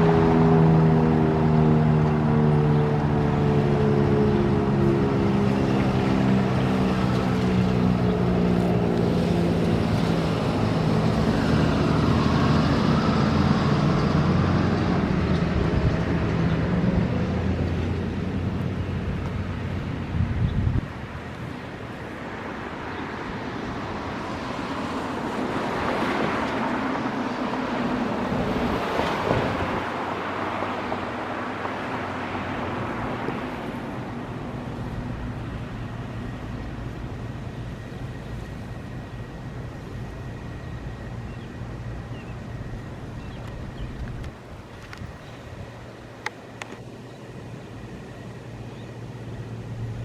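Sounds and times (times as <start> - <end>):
vehicle passing: 0.0 - 39.4.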